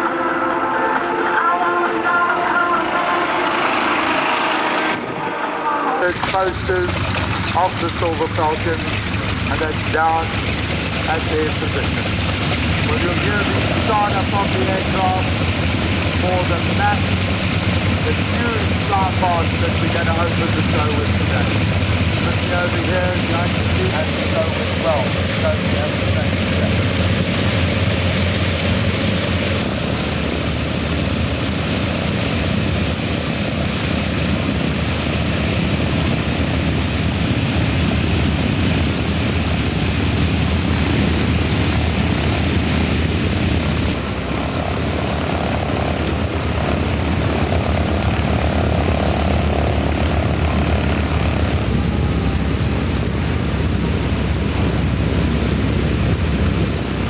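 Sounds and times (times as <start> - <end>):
propeller aircraft engines droning: 0.0 - 57.0.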